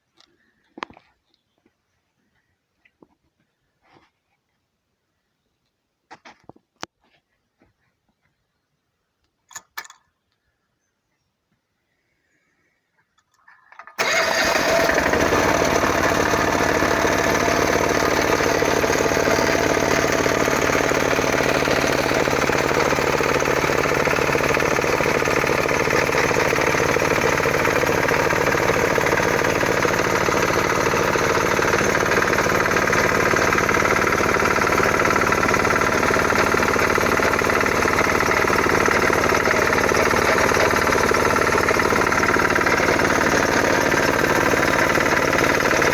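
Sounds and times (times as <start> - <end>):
diesel air compressor pulsing: 14.0 - 45.9.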